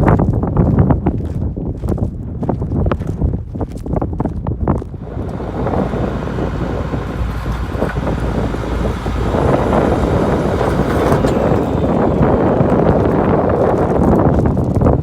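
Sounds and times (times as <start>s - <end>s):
truck engine rumble: 4.8s - 15.0s.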